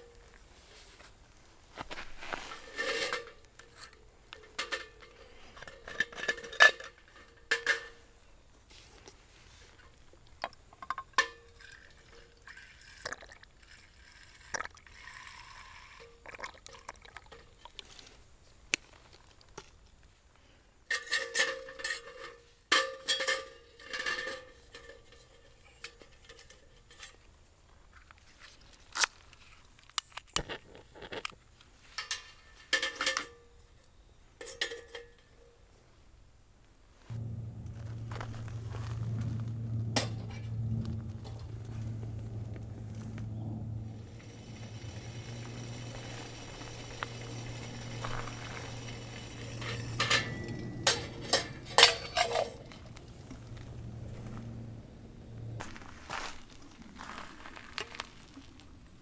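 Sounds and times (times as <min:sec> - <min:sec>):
liquid pouring: 0:12.1 - 0:17.3
metal cookware clinking: 0:44.4 - 0:53.0.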